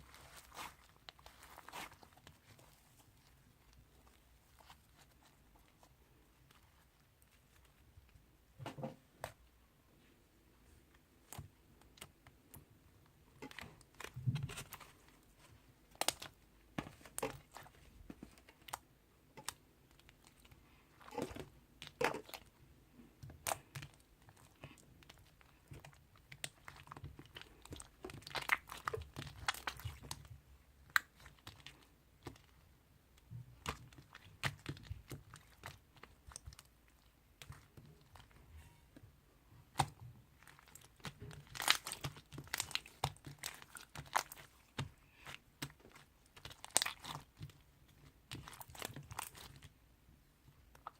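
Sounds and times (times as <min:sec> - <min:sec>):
slime squished by hand: 0:00.0 - 0:07.8, 0:23.2 - 0:38.8, 0:39.6 - 0:49.8.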